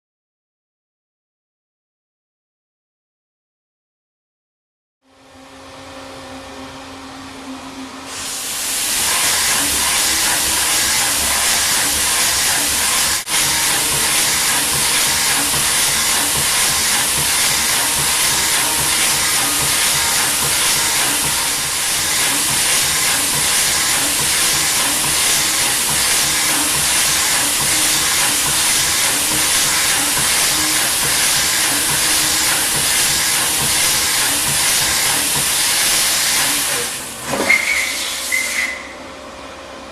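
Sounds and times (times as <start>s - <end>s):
low machine hum: 5.1s - 8.2s
cutter hissing with fast pulsing: 8.1s - 38.9s.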